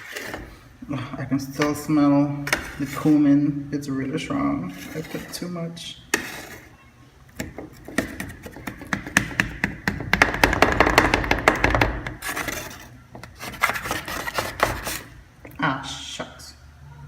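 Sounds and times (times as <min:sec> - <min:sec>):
utensil scraping a dish: 0:00.0 - 0:00.7, 0:01.5 - 0:03.4, 0:04.2 - 0:06.8, 0:12.0 - 0:15.2.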